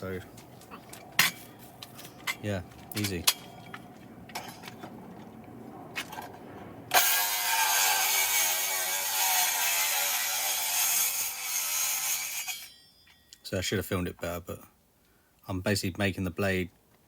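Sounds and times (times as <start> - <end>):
circular saw cutting wood: 6.9 - 12.8.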